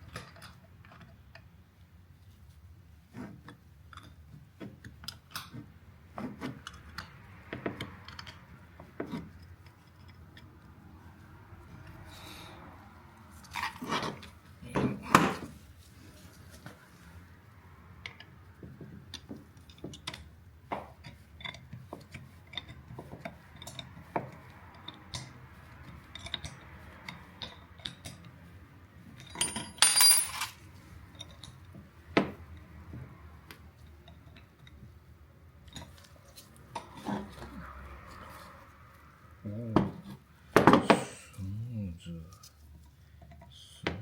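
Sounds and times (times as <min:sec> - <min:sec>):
metal parts clicking and tapping: 0:19.1 - 0:28.4, 0:29.2 - 0:31.6
ringing metal clink: 0:29.4 - 0:30.6.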